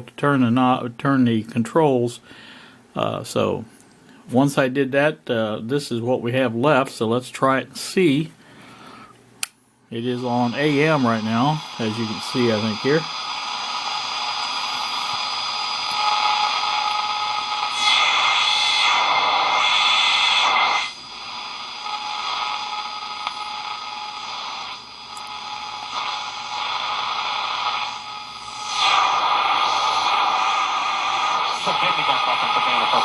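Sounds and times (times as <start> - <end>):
radio static and hiss: 9.9 - 33.0
faint radio whistles: 10.2 - 33.0.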